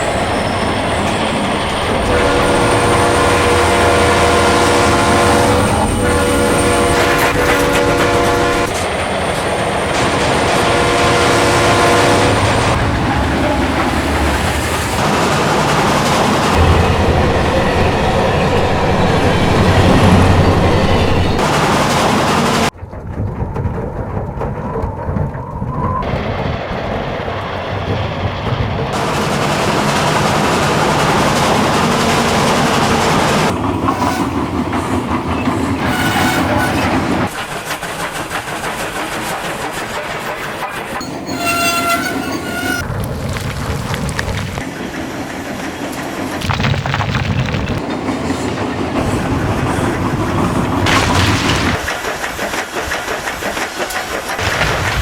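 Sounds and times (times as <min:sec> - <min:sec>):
train rumbling and clattering: 0:00.0 - 0:55.0
locomotive horn blasts: 0:01.7 - 0:09.0, 0:09.9 - 0:12.9, 0:16.1 - 0:22.7, 0:29.0 - 0:34.5, 0:35.8 - 0:37.3, 0:40.3 - 0:42.9.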